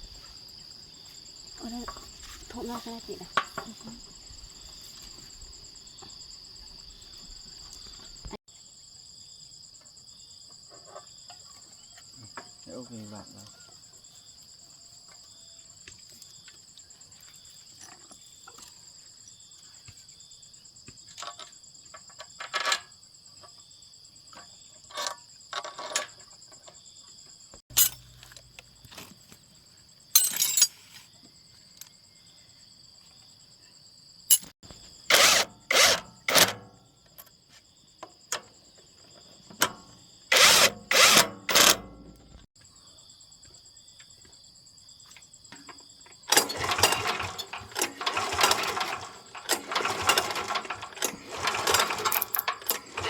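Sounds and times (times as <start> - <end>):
crickets chirring: 0.0 - 53.0
metal clattering on engine: 46.3 - 53.0.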